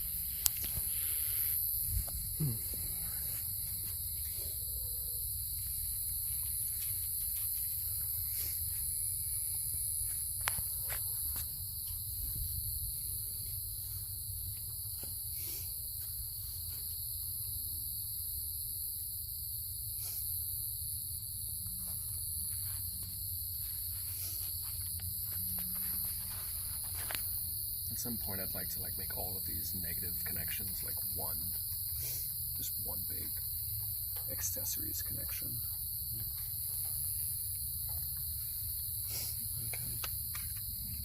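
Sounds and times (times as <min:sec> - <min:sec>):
crickets trilling: 0:00.0 - 0:41.0.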